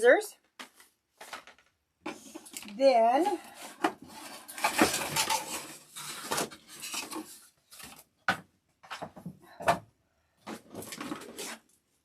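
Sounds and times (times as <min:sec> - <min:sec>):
plastic packaging rustling: 0:01.2 - 0:08.1, 0:10.5 - 0:11.7
craft tools clicking and clattering: 0:03.4 - 0:09.2.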